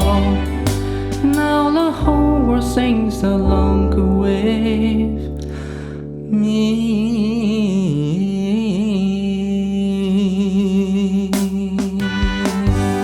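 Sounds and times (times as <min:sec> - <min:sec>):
slow jazz music: 0:00.0 - 0:08.4, 0:12.0 - 0:13.0.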